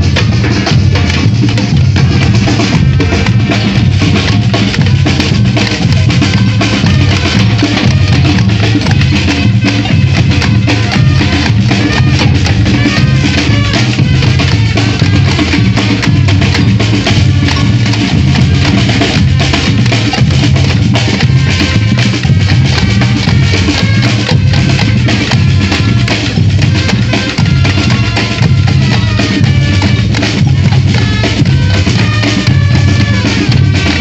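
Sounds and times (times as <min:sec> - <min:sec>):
deep bass drums pulsing: 0:00.0 - 0:34.0
street percussion band: 0:00.0 - 0:34.0.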